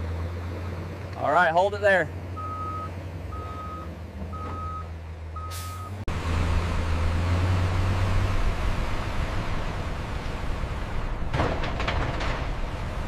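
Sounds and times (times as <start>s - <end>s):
diesel engine running: 0.0s - 13.0s
reversing alarm beeps: 2.4s - 6.0s.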